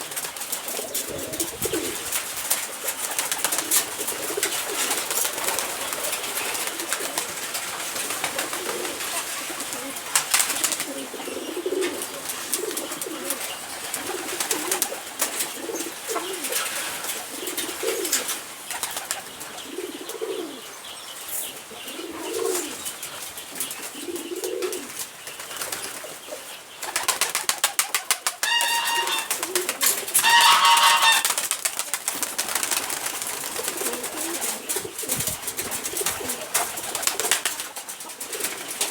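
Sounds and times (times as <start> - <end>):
poultry cooing calls: 0.0 - 31.5
higher-pitched poultry calls: 28.0 - 31.5.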